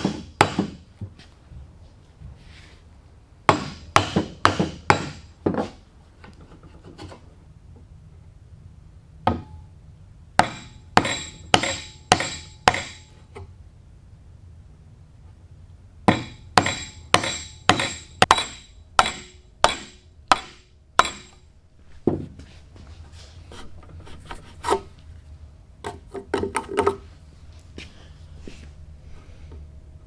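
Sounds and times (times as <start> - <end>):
sharp ringing tool strikes: 10.4 - 13.1, 16.1 - 21.4
wood rubbing and scraping: 22.2 - 25.3.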